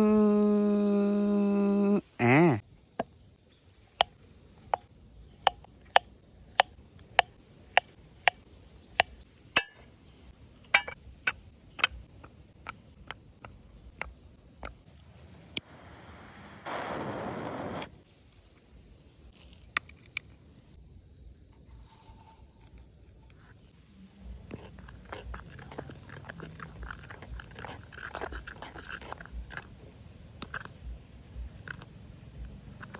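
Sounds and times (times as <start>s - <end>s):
high buzz of insects: 0.0s - 32.9s
noisy rush: 15.0s - 18.0s.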